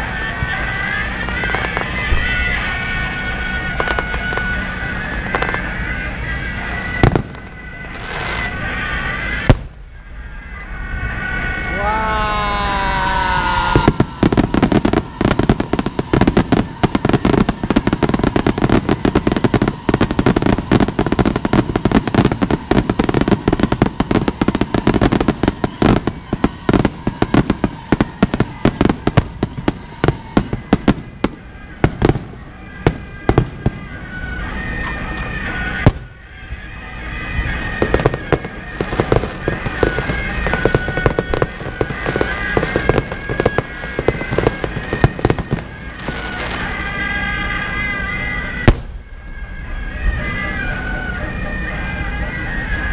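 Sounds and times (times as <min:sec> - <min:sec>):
firecrackers crackling: 0:00.0 - 0:49.4
loud firework bangs: 0:00.5 - 0:10.0, 0:12.5 - 0:47.9, 0:48.5 - 0:49.4.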